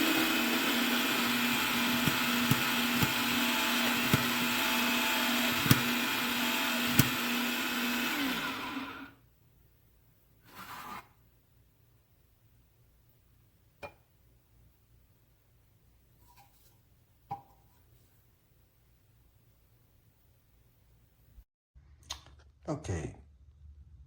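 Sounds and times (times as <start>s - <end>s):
coffee grinder motor hum: 0.0s - 9.2s.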